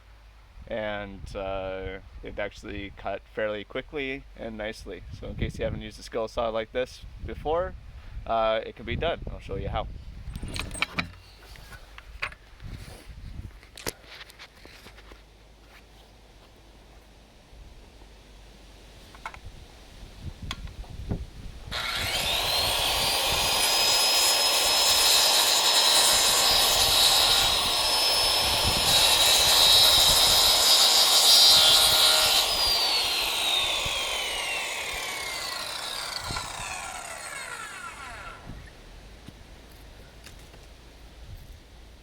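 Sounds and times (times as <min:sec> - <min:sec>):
saw blade spinning down: 0:21.7 - 0:38.7
circular saw whining: 0:21.7 - 0:38.8.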